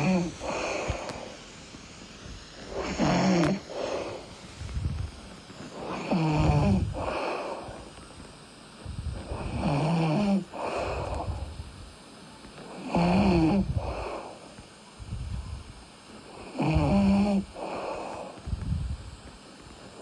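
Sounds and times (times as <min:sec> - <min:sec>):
person snoring: 0:00.0 - 0:01.4, 0:02.6 - 0:05.0, 0:05.6 - 0:07.9, 0:09.2 - 0:11.6, 0:12.7 - 0:14.5, 0:16.3 - 0:18.4
soft breath: 0:00.0 - 0:20.0.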